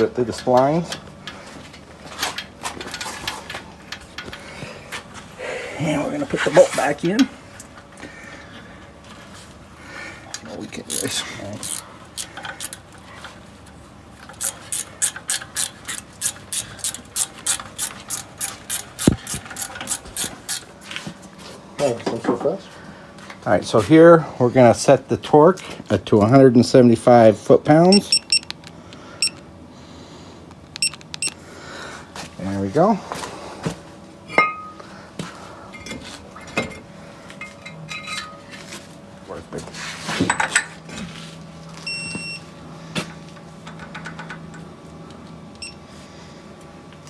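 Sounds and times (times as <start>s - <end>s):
ratchet wrench clicking: 10.9s - 12.8s, 14.3s - 20.6s
metal tools clinking on steel: 37.4s - 38.6s.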